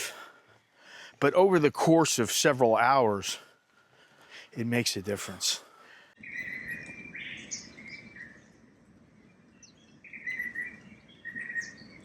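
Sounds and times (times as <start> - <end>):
birds whistling and chirping: 6.2 - 12.0.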